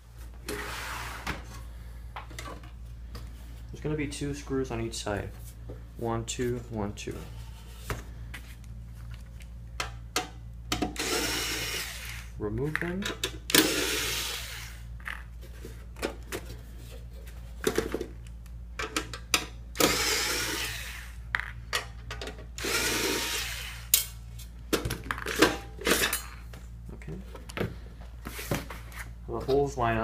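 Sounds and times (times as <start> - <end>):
cordless screwdriver running: 11.0 - 12.3, 19.8 - 21.1, 22.6 - 23.9.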